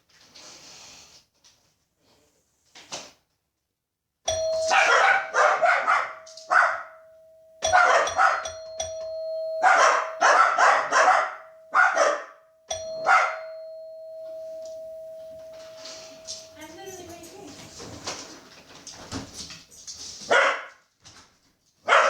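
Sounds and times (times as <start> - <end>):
doorbell ringing: 4.3 - 18.2
dogs barking: 4.6 - 7.0, 7.6 - 8.6, 9.6 - 12.4, 13.0 - 13.5, 20.3 - 20.8.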